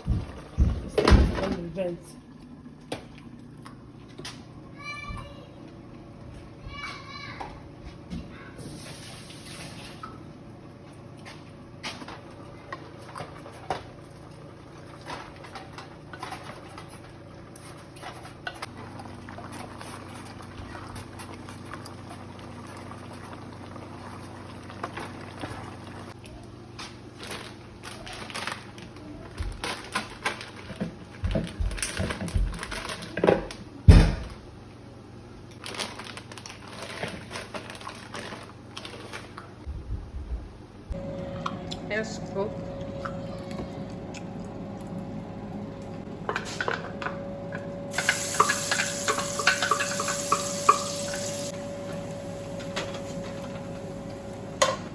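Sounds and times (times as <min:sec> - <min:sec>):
steady low hum: 0:39.7 - 0:54.9
pots and utensils clinking: 0:46.2 - 0:54.9.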